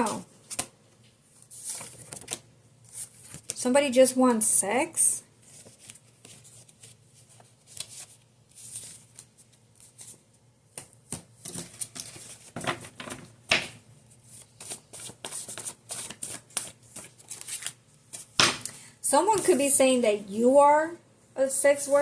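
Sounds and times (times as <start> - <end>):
cards being shuffled: 14.3 - 18.6.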